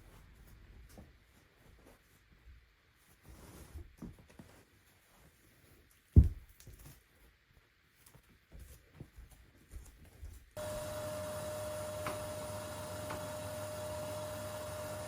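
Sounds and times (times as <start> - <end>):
faint handling sounds: 0.0 - 10.6
steady hum with held tone: 10.6 - 15.0.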